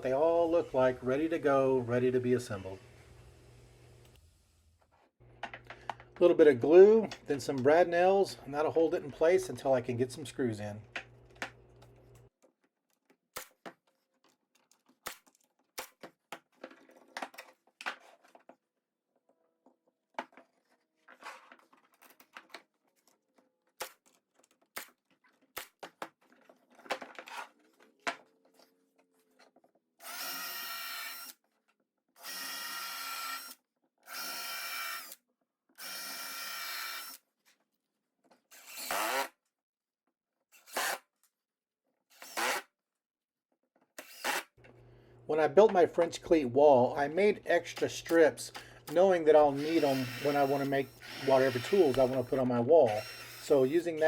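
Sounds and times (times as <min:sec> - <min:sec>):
power drill driving screws: 0:30.0 - 0:31.4, 0:32.2 - 0:35.2, 0:35.8 - 0:37.2, 0:38.5 - 0:39.4, 0:40.5 - 0:41.0, 0:42.1 - 0:42.7, 0:44.0 - 0:44.5, 0:49.4 - 0:54.0.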